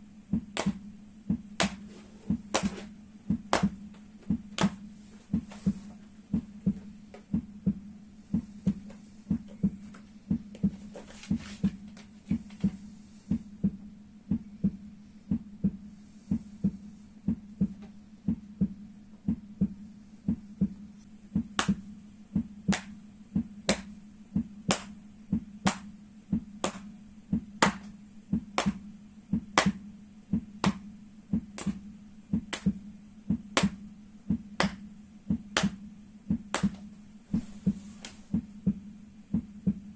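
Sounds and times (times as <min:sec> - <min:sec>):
sharper slaps: 0:00.6 - 0:00.8, 0:01.6 - 0:01.8, 0:02.5 - 0:02.9, 0:03.5 - 0:03.8, 0:04.6 - 0:04.8, 0:21.6 - 0:21.8, 0:22.7 - 0:22.9, 0:24.7 - 0:24.9, 0:25.7 - 0:25.9, 0:26.6 - 0:26.9, 0:28.6 - 0:28.8, 0:29.6 - 0:29.8, 0:30.6 - 0:30.8, 0:31.6 - 0:31.8, 0:32.5 - 0:32.7, 0:34.6 - 0:34.8, 0:36.5 - 0:36.8.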